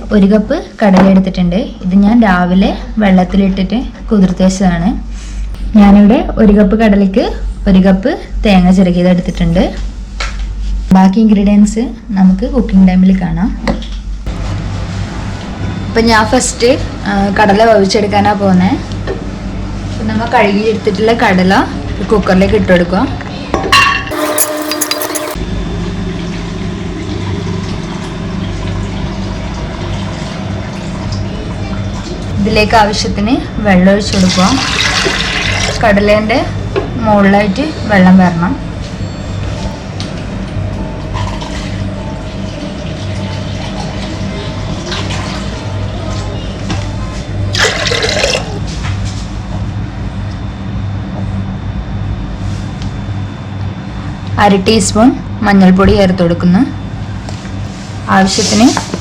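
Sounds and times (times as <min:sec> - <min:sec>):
steady low hum: 0:24.1 - 0:34.6, 0:35.8 - 0:59.0
water pouring into a pot: 0:34.3 - 0:35.8, 0:47.5 - 0:48.6.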